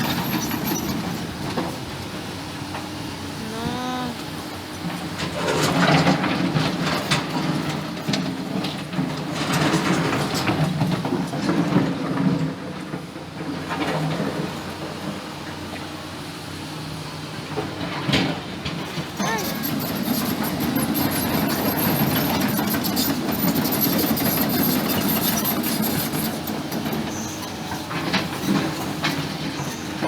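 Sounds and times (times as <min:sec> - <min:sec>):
excavator diesel engine: 0:00.0 - 0:05.6.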